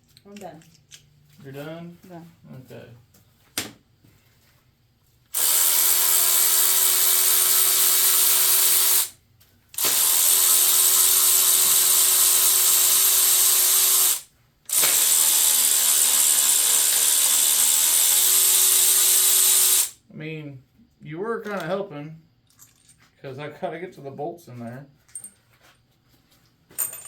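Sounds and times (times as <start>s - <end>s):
shop tool loud hiss: 5.4s - 9.1s, 9.8s - 20.0s.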